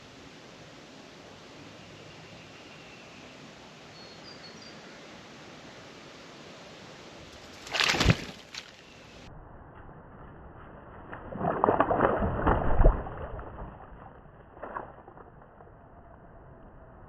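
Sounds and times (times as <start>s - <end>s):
outdoor hiss: 0.0s - 9.3s
faint high bird chirps: 1.7s - 5.0s
bird splashing in water: 7.4s - 8.9s.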